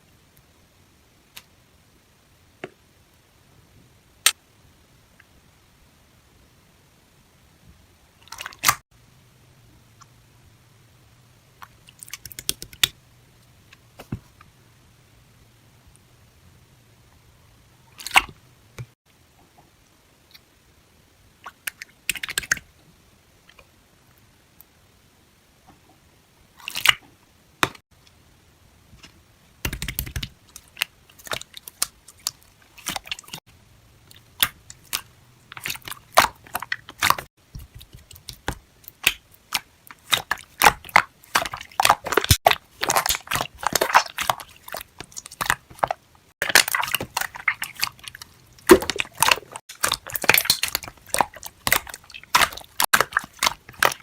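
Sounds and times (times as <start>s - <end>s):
crisp crunching and crackling: 39.0s - 54.0s.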